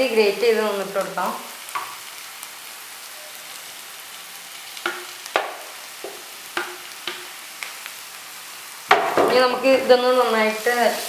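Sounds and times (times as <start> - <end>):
onions sizzling in a pan: 0.0 - 11.0
spoon knocking against pan: 4.8 - 7.3, 8.9 - 9.4.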